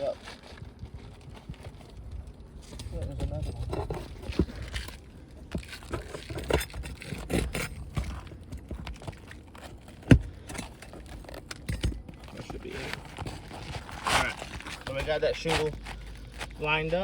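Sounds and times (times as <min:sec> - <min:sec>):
tool scraping under roof shingles: 0:02.6 - 0:17.0.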